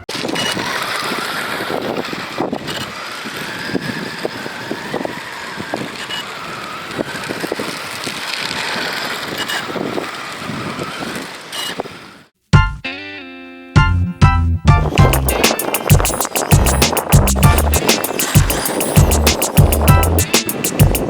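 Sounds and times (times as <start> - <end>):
electric motor whining: 0.0 - 11.9.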